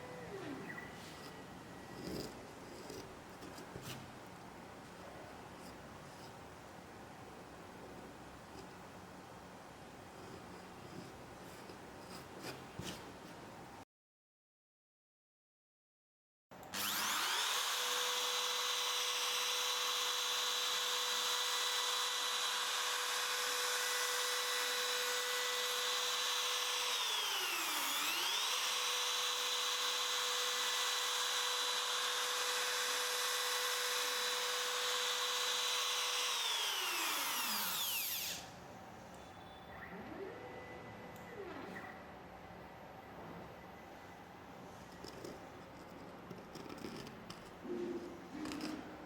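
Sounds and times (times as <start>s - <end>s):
router spindle high whine: 16.7s - 38.6s.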